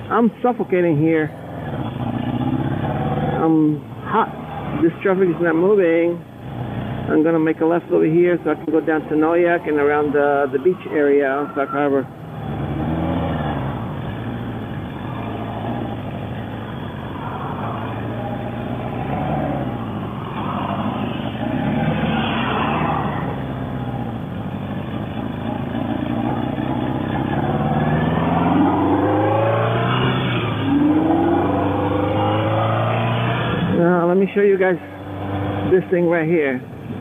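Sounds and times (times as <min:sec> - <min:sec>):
motorcycle engine running: 0:12.1 - 0:20.2, 0:23.4 - 0:28.3.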